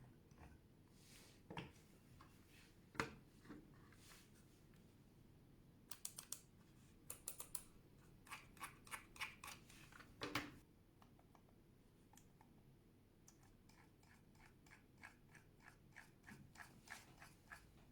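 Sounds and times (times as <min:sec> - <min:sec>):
quiet mouse clicks: 0:05.9 - 0:06.5, 0:07.1 - 0:07.7.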